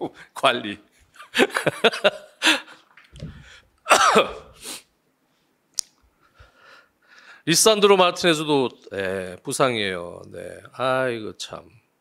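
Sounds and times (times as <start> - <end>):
man clearing throat: 3.9 - 4.6.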